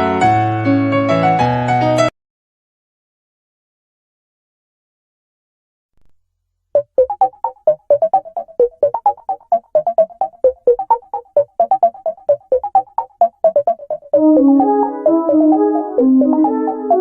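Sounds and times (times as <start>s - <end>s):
phone ringtone synth melody: 6.8s - 17.0s.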